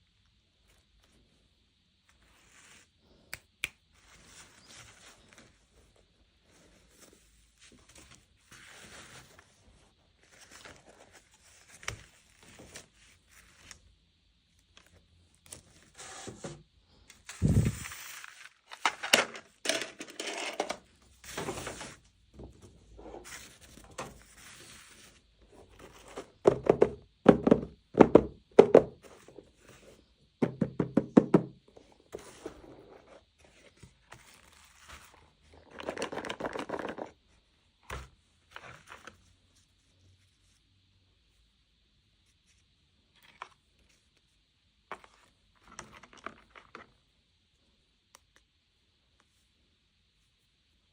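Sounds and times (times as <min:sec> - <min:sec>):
plastic packaging rustling: 0:17.2 - 0:22.0, 0:32.2 - 0:37.2.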